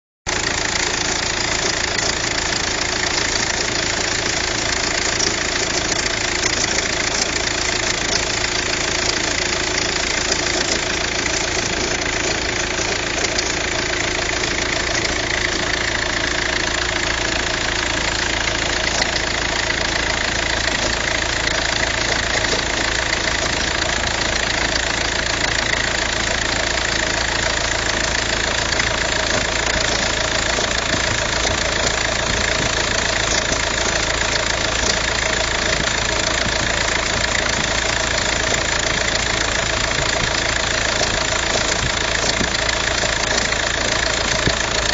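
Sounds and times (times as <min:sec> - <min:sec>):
car engine idling: 0:00.3 - 0:44.9
drive belt noise: 0:00.3 - 0:44.9.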